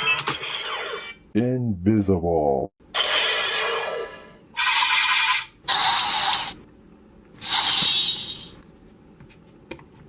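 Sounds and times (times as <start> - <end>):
hissing bursts: 7.4 - 8.5.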